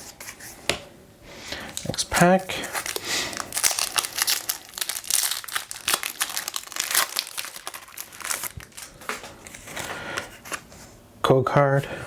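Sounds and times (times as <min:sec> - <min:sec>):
foil wrapper crinkling: 0:02.6 - 0:09.9.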